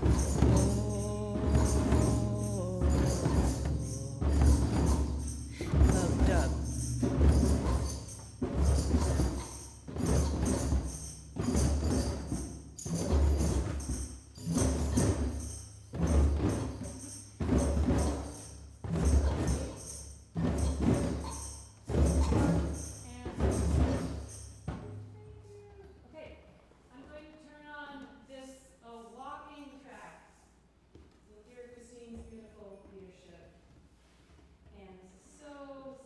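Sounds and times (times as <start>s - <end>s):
hand drums low booms: 0.0s - 25.8s.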